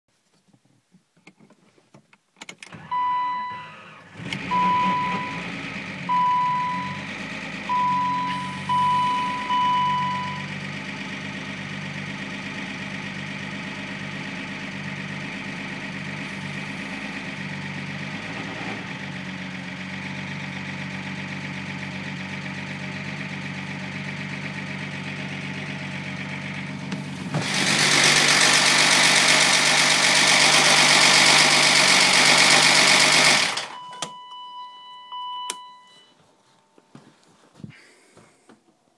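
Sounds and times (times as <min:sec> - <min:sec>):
car engine idling with mechanical noise: 0:02.7 - 0:35.4
warning chime: 0:07.7 - 0:10.5.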